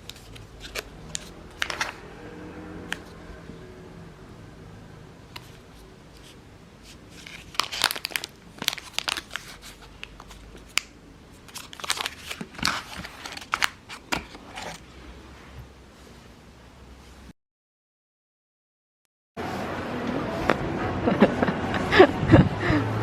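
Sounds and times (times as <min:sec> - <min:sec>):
packaging crinkling and tearing: 0:00.0 - 0:02.0, 0:06.9 - 0:10.9, 0:11.5 - 0:14.8.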